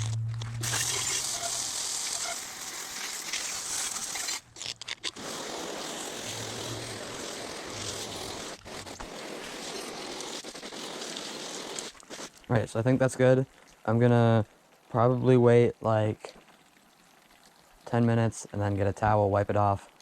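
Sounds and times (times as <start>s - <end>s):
water spraying from a hose: 0.0s - 14.0s.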